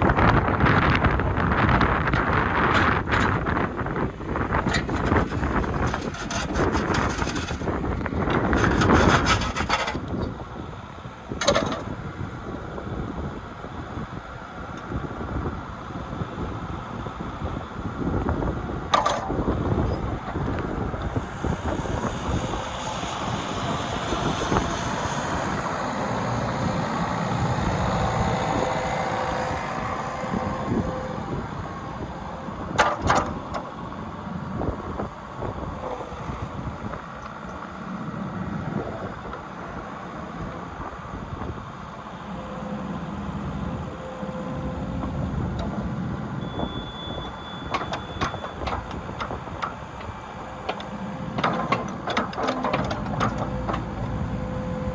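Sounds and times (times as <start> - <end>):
excavator engine and hydraulics: 0.0 - 54.9
faint hydraulic whine: 19.0 - 54.9.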